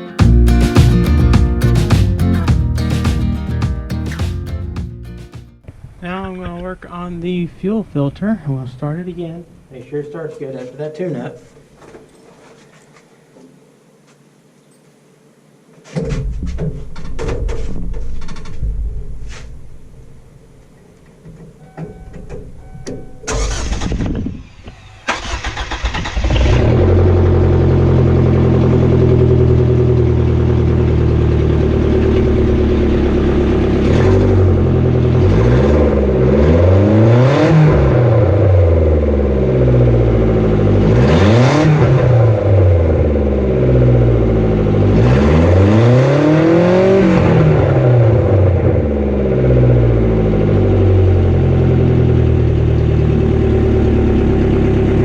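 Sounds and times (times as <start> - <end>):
car engine cranking and starting: 16.7 - 55.0
car engine revving: 23.2 - 55.0.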